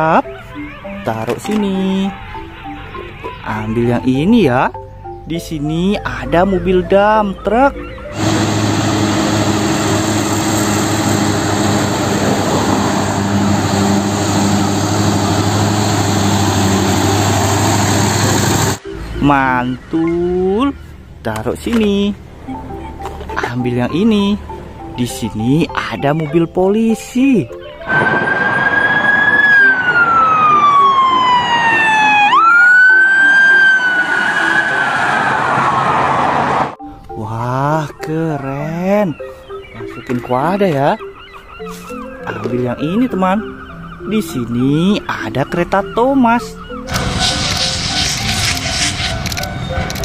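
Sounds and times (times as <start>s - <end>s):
toy siren wailing: 0.3s - 3.5s, 27.5s - 36.0s, 39.8s - 47.3s
truck engine droning: 6.6s - 23.3s, 27.5s - 36.8s, 41.8s - 50.0s.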